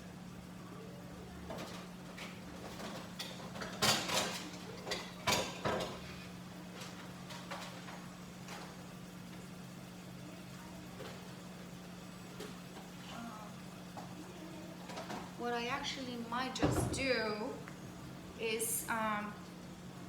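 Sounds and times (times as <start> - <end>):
dishes knocking and clattering: 1.5 - 6.2.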